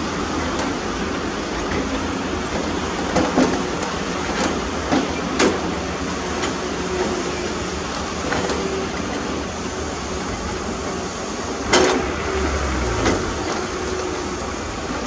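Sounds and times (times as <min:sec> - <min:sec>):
heavy machinery running: 0:08.4 - 0:15.0.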